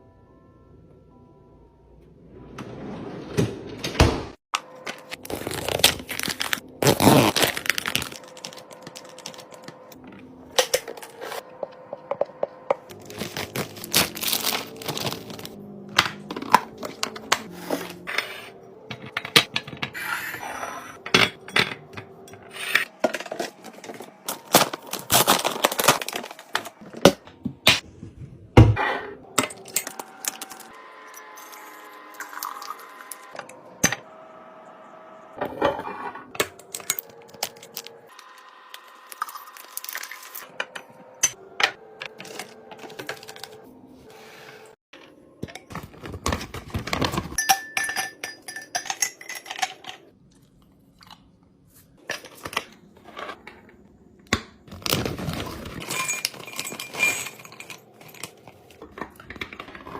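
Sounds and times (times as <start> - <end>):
food containers clicking and clinking: 45.0 - 50.1, 54.4 - 59.9.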